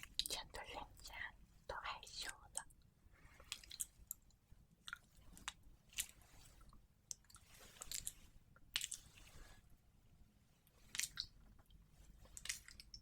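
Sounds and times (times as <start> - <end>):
wet clicks and crackles: 3.4 - 6.3, 7.0 - 9.2, 10.8 - 13.0.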